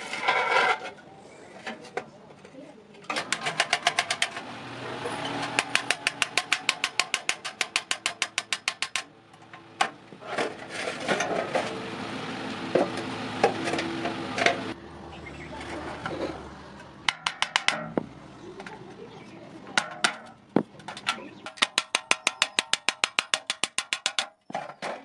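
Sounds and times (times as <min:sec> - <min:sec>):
hammer striking iron: 0:05.4 - 0:09.1, 0:17.1 - 0:18.1, 0:19.8 - 0:20.4, 0:21.4 - 0:24.4.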